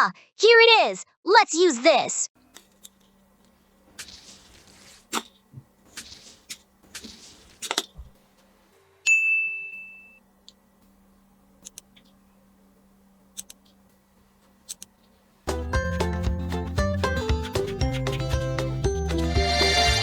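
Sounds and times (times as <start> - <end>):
bright ding: 9.0 - 10.2.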